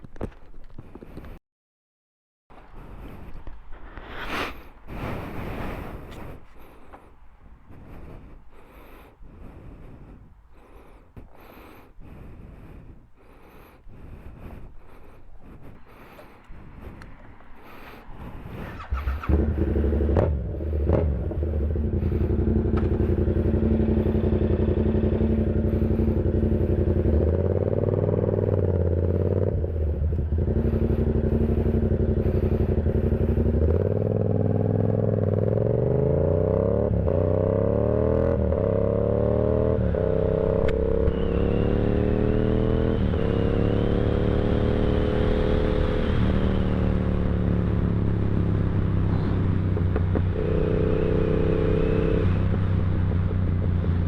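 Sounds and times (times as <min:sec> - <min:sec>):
motorcycle engine accelerating: 0:16.5 - 0:54.0.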